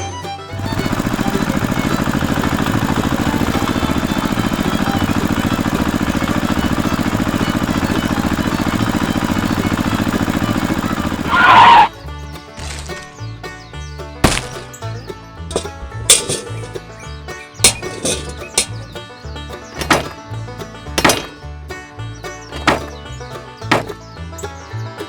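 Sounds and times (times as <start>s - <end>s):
small motor pulsing: 0.5s - 11.9s.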